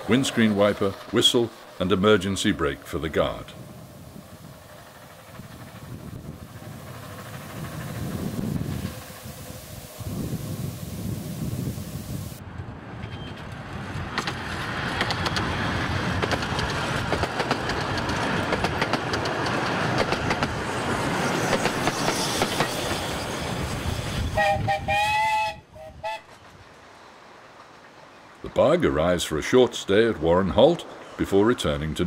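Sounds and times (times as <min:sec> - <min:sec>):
train wheels clicking on rails: 0:00.0 - 0:02.4, 0:04.2 - 0:10.4, 0:11.4 - 0:24.5, 0:26.2 - 0:28.6
steam train whistle blasts: 0:24.4 - 0:26.3.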